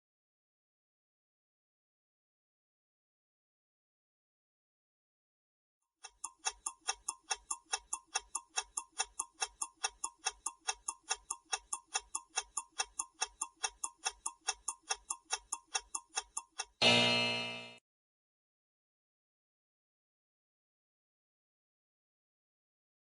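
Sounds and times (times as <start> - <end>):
countdown timer ticking: 6.0 - 17.8
ringing time's-up signal: 16.8 - 17.8.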